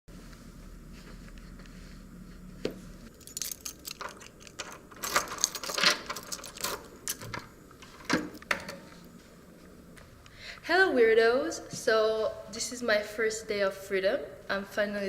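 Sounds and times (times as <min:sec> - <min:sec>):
small hard objects clinking: 0:03.1 - 0:07.2.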